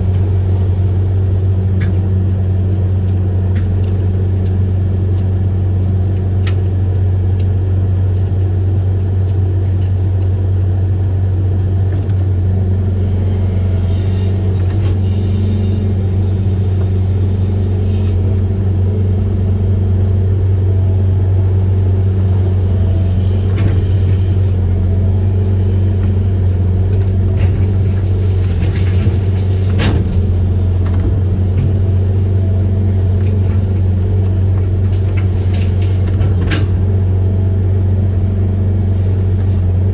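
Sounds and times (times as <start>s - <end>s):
diesel engine droning: 0.0s - 39.9s
machine knocks: 25.8s - 32.0s.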